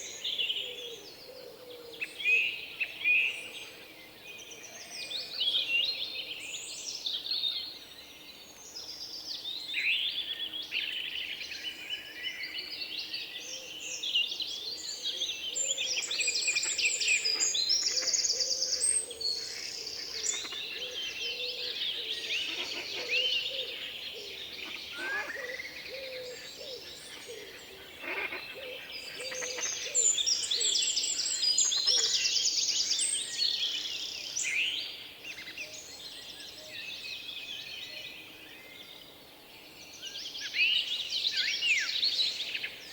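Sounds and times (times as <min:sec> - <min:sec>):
birds chirping and trilling: 0:15.5 - 0:39.0.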